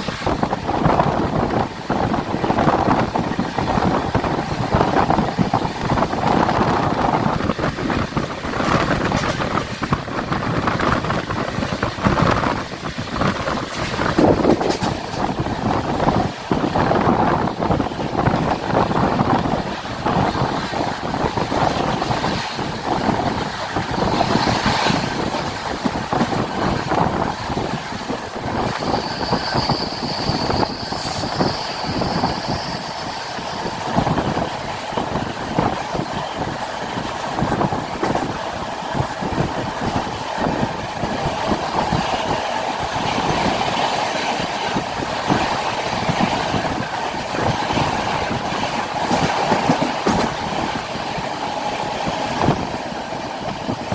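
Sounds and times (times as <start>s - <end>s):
train wheels rumbling over track: 0.0s - 53.9s
high wheel squeal: 28.8s - 33.2s.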